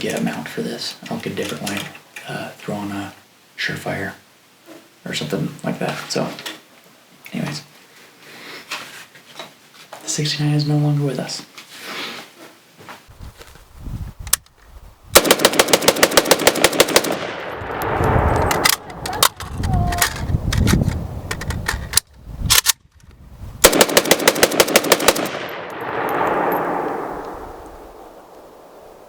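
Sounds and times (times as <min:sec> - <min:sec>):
rapid rifle fire: 0:15.2 - 0:17.8, 0:23.6 - 0:27.1
gunshot echo: 0:15.2 - 0:19.4, 0:23.6 - 0:29.0.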